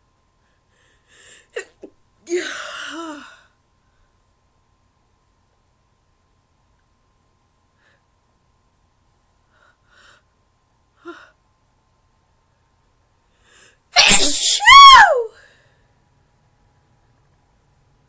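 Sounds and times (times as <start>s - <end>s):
woman sneezing: 1.6s - 3.3s, 14.0s - 15.3s.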